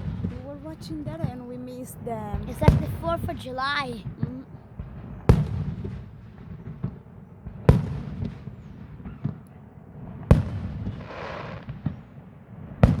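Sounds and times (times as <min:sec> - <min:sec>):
rumbling echo: 0:00.0 - 0:09.2
faint fireworks pops: 0:00.0 - 0:13.0
fireworks loud bangs: 0:00.0 - 0:13.0.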